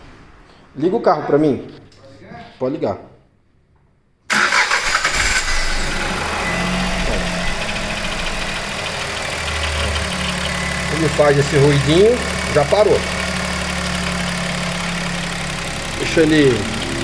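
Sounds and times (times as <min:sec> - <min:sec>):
car engine starting and idling: 0:04.3 - 0:17.0.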